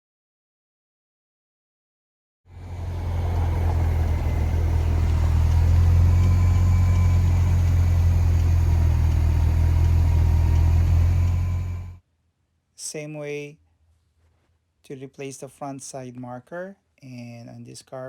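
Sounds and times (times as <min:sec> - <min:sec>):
car engine idling: 0:02.5 - 0:12.0.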